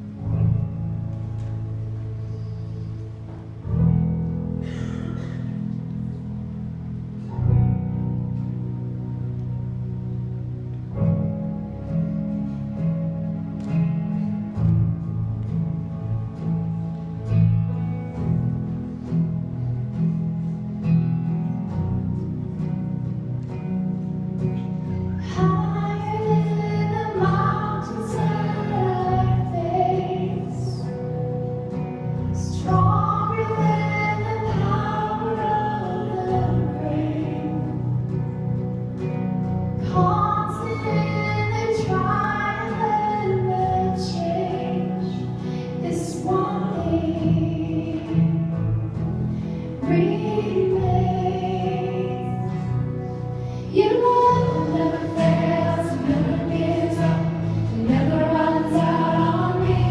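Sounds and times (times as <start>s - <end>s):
instrumental music with bass: 0.0s - 59.9s
person singing: 49.8s - 52.8s, 53.7s - 59.9s.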